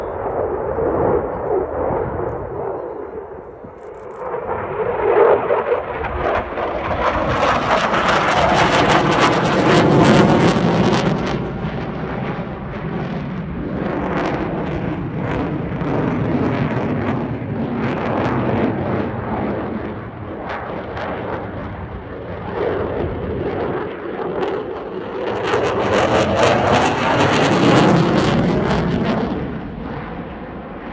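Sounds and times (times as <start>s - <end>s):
jet fighter roaring past: 0.0s - 30.9s.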